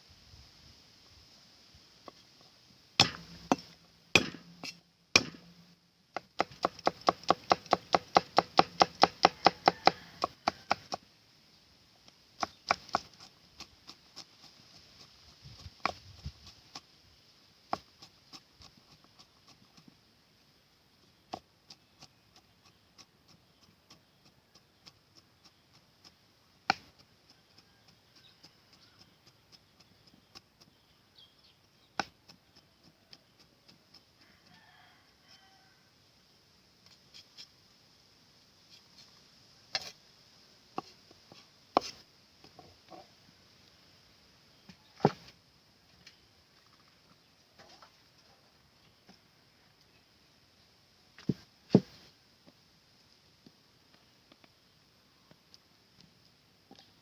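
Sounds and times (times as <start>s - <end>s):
knife chopping on wooden board: 3.0s - 5.5s, 6.2s - 10.9s, 41.8s - 42.0s.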